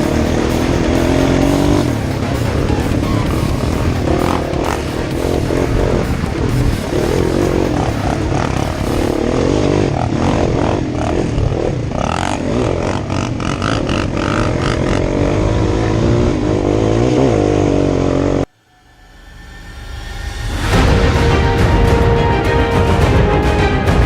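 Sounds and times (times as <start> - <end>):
off-road vehicle engine revving: 0.0 - 18.5.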